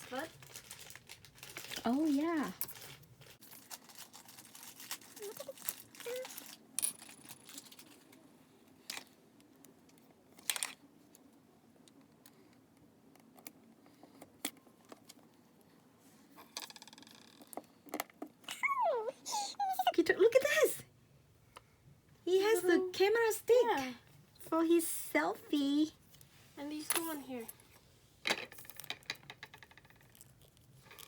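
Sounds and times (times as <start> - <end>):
plastic parts rustling: 0.0 - 8.2, 28.2 - 31.0.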